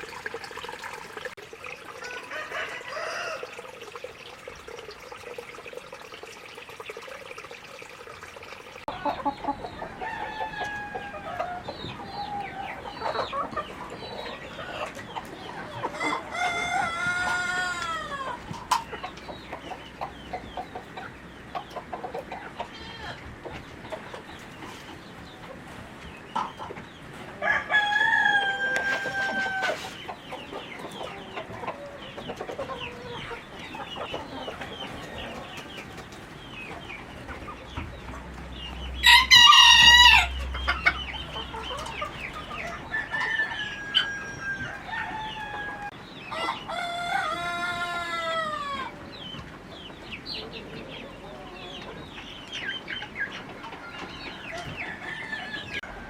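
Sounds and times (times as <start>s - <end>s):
chickens clucking: 1.1s - 7.4s, 8.0s - 56.0s
roosters crowing: 1.9s - 3.8s, 9.0s - 18.5s, 22.6s - 23.3s, 27.2s - 30.0s, 38.9s - 49.2s, 53.8s - 56.0s.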